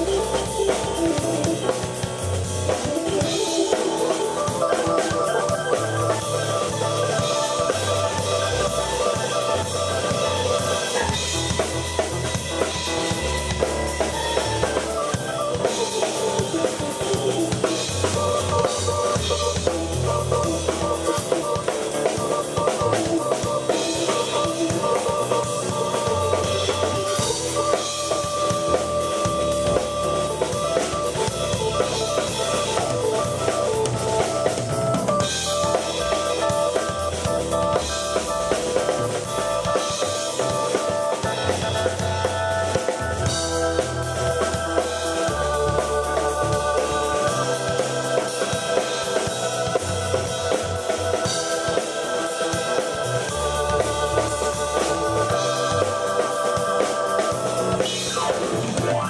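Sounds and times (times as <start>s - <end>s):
drum kit beat: 0.0s - 59.0s
held keyboard notes: 0.0s - 59.0s
low bass line: 41.3s - 51.6s.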